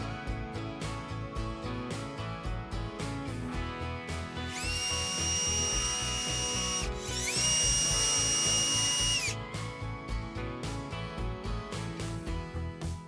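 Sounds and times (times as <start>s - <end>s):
background music: 0.0s - 13.0s
power tool motor whining: 4.4s - 9.4s.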